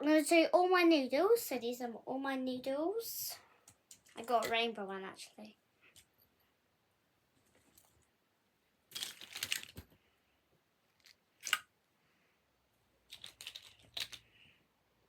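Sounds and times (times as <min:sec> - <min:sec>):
toys rustling and crinkling: 0:07.4 - 0:08.1, 0:08.9 - 0:10.0, 0:10.9 - 0:11.7, 0:13.1 - 0:14.4.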